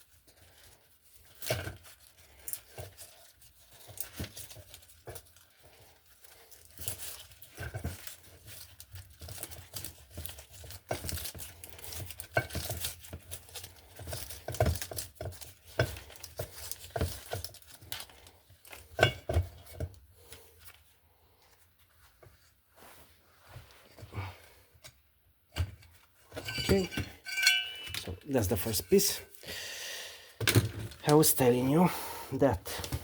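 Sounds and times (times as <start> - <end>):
hands rustling and scraping parts: 0.0 - 29.4, 32.5 - 33.0
small parts clicking and knocking: 1.1 - 19.9, 25.6 - 28.3.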